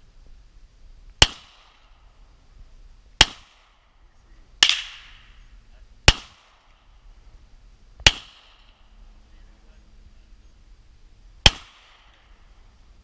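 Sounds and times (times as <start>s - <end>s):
pistol shots: 1.2s - 2.0s, 3.2s - 3.8s, 4.6s - 5.2s, 6.0s - 6.9s, 8.0s - 8.9s, 11.4s - 12.4s.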